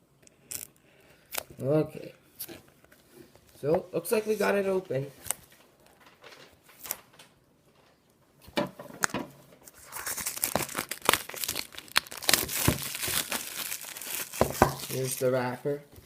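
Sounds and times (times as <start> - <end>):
plastic wrapper crinkling: 9.0 - 15.6.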